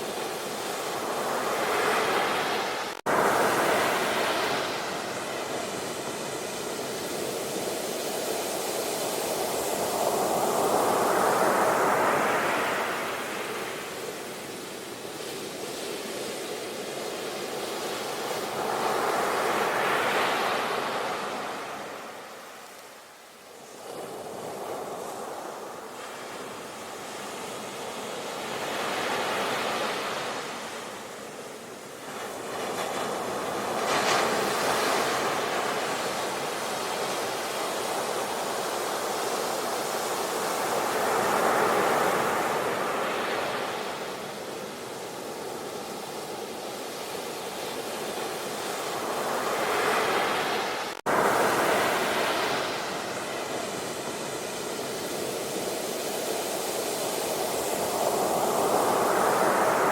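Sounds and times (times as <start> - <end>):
ocean waves breaking: 0.0 - 14.5, 23.7 - 59.9.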